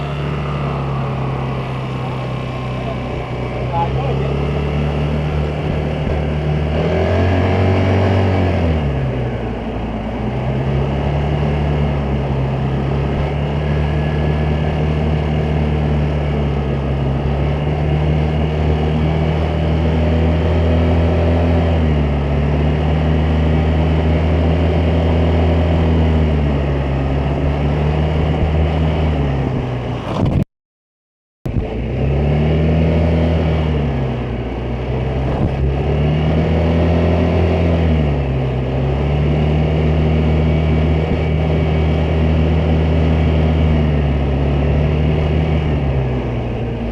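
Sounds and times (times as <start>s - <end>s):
scooter engine revving: 0.0s - 9.6s.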